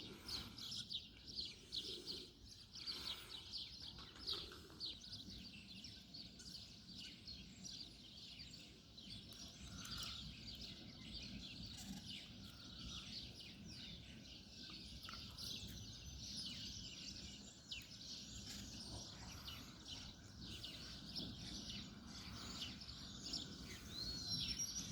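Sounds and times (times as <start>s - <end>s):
small birds chirping: 0.0s - 24.9s.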